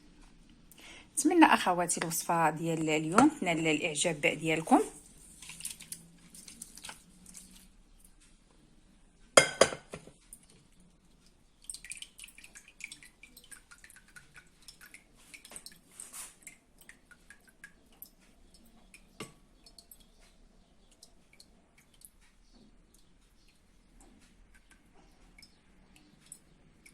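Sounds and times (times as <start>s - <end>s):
water dripping: 0.2s - 26.9s
pot clanking: 9.4s - 10.2s.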